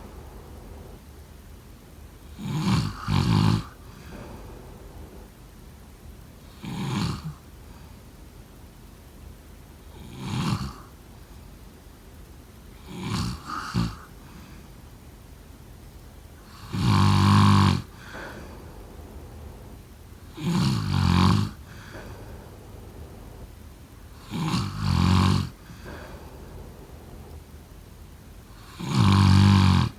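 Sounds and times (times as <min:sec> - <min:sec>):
person snoring: 0:00.0 - 0:01.1, 0:02.2 - 0:05.4, 0:06.4 - 0:07.9, 0:09.9 - 0:10.9, 0:12.8 - 0:14.6, 0:16.4 - 0:27.5, 0:28.5 - 0:29.9.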